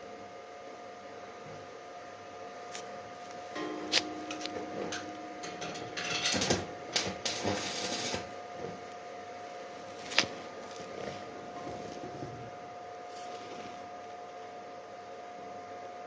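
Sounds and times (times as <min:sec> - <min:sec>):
electrical hum: 0:00.0 - 0:16.0
arc welding crackling hiss: 0:02.6 - 0:14.1.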